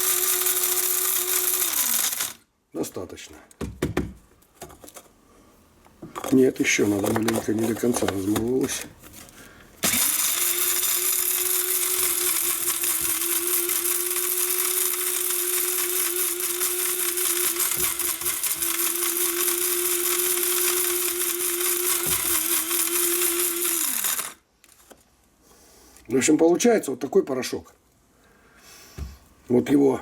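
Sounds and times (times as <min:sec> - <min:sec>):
electric coffee grinder running: 0:00.0 - 0:02.4, 0:09.8 - 0:24.4.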